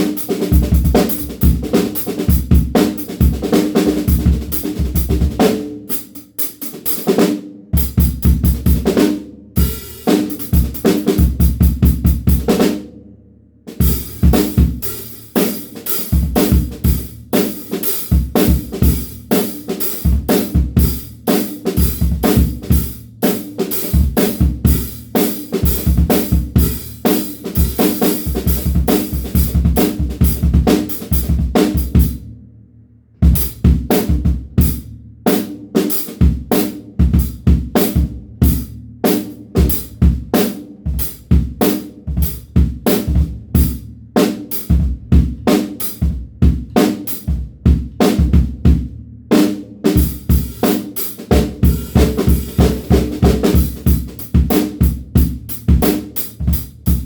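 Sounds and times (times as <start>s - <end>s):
snare drum: 0.0s - 12.8s, 13.8s - 32.1s, 49.3s - 57.0s
cymbals: 50.0s - 54.5s.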